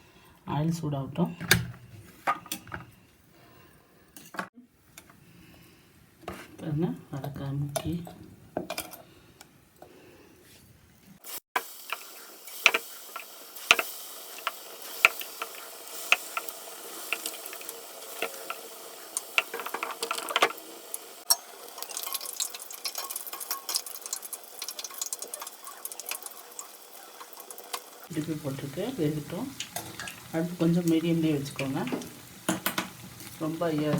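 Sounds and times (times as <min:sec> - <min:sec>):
crackles and pops of frying: 0:04.3 - 0:09.6, 0:11.2 - 0:33.9
batter slices frying in oil: 0:11.2 - 0:33.9.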